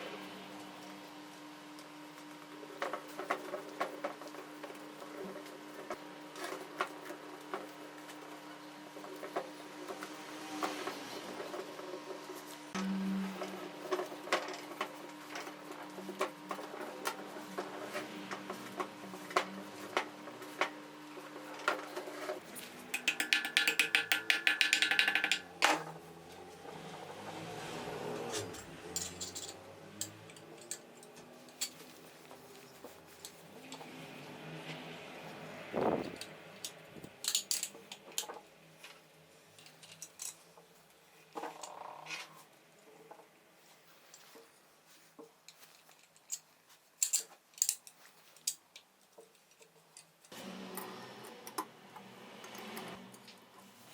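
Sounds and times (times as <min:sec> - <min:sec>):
metal clicks of hand tools: 0:22.8 - 0:25.9, 0:28.2 - 0:31.9, 0:45.8 - 0:51.7.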